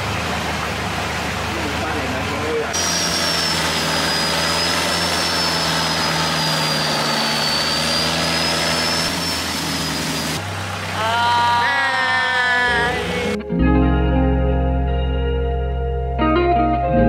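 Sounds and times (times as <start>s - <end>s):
vehicle engine running: 0.0s - 13.5s
high wavering whine: 1.4s - 13.7s.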